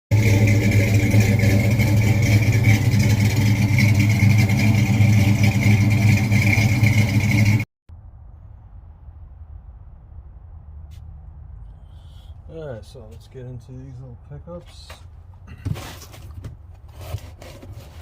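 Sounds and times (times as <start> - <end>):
loud engine running: 0.1 - 7.7.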